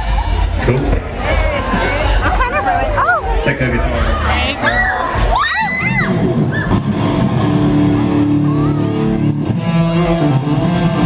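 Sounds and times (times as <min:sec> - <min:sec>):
electric guitar sustained notes: 0:05.8 - 0:11.0.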